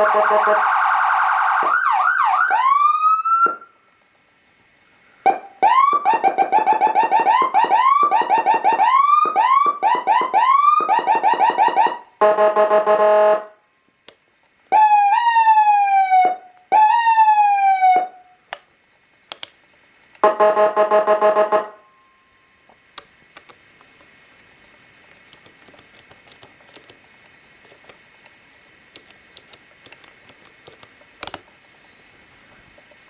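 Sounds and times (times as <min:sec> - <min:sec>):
sharp clicks: 0:19.3 - 0:19.6, 0:23.0 - 0:24.1, 0:25.1 - 0:31.5.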